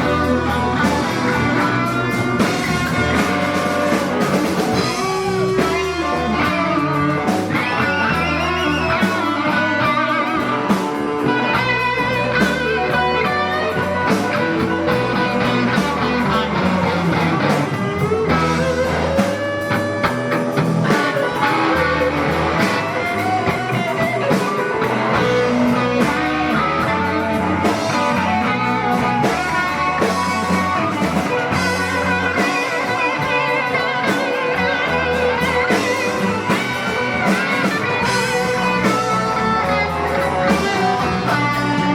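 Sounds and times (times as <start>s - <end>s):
bass guitar: 0.0s - 41.9s
drums: 0.0s - 41.9s
electric guitar solo: 0.0s - 41.9s.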